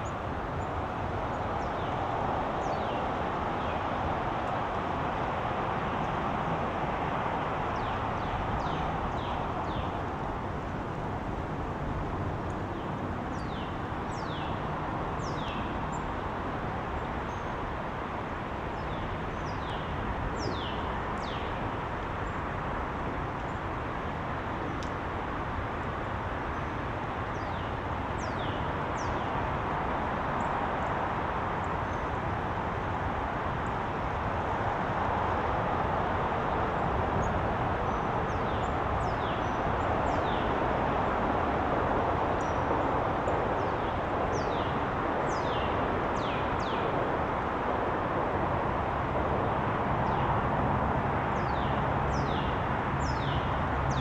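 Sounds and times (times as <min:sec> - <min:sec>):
small birds chirping: 0:18.7 - 0:21.6.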